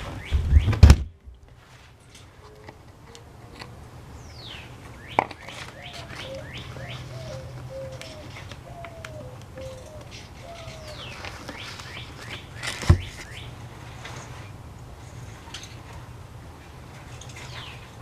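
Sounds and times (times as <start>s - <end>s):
songbird whistling: 4.2s - 13.5s.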